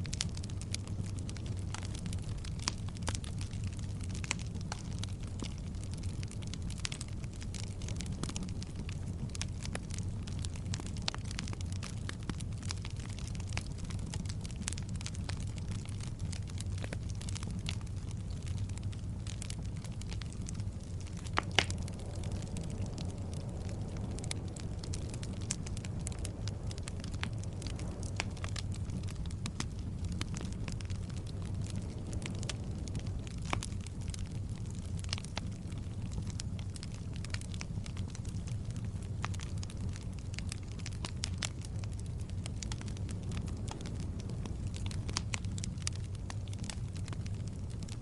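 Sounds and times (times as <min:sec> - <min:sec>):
fire crackles and pops: 0:00.0 - 0:48.0
low roar of flames: 0:00.0 - 0:48.0.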